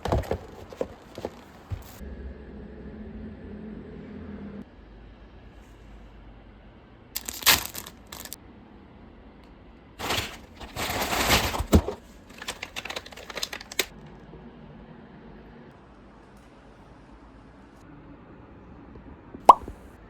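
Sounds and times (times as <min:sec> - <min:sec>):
packaging crinkling: 0:07.2 - 0:08.4, 0:10.0 - 0:13.9.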